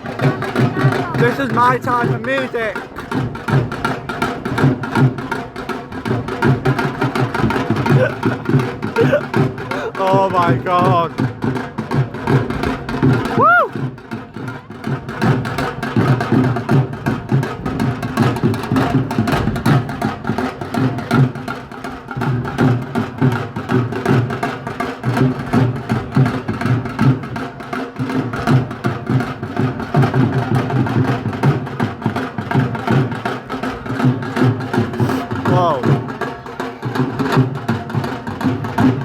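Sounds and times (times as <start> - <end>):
drums playing fast rhythm: 0.0 - 39.0
street band playing: 0.0 - 39.0.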